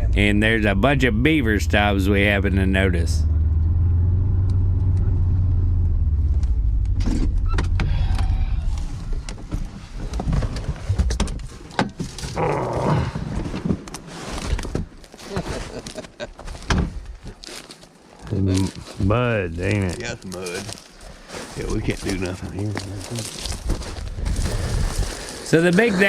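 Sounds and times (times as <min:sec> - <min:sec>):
vehicle engine running: 0:00.0 - 0:09.0
rustling: 0:08.6 - 0:25.9.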